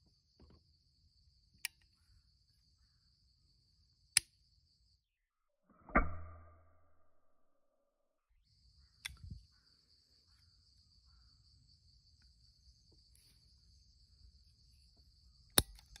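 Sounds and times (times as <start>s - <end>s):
sharp click: 15.6s - 16.0s.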